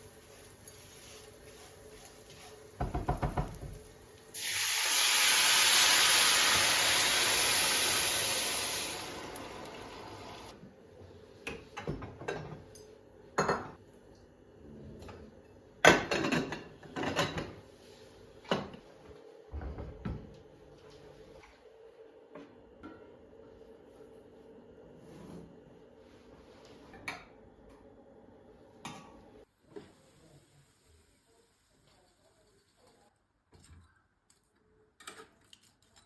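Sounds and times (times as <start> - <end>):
kitchen tap running: 2.8 - 10.5.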